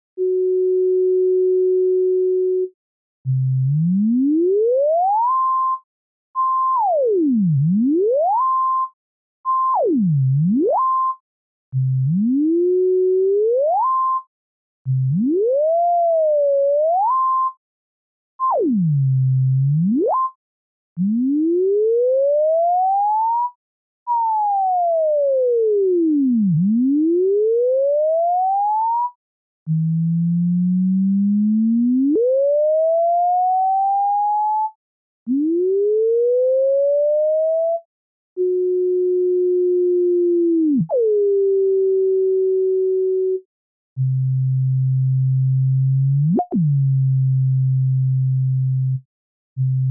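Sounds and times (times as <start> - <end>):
sine tone gliding in pitch: 0.2 - 2.7, 21.0 - 49.9.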